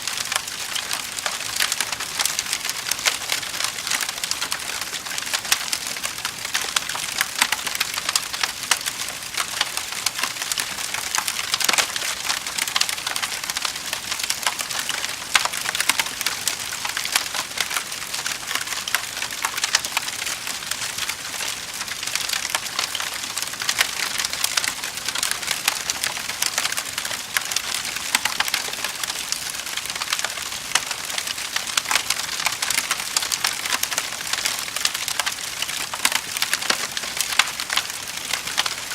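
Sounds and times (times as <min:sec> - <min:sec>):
wood fire crackling: 0:00.0 - 0:38.9.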